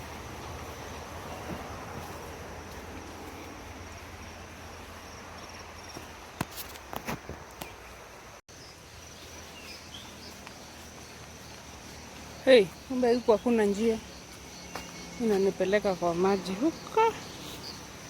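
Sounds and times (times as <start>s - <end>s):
insects chirping: 0.0s - 18.0s.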